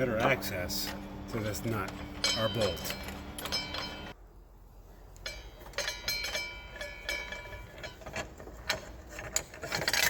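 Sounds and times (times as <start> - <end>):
metal clicks and clinks: 1.6 - 4.2, 5.1 - 10.0
short metallic ringing: 2.0 - 4.2.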